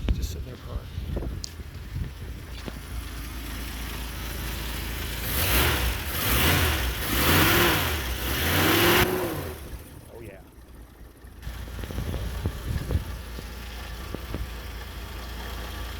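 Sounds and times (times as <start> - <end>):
car engine running and revving: 0.0 - 15.9.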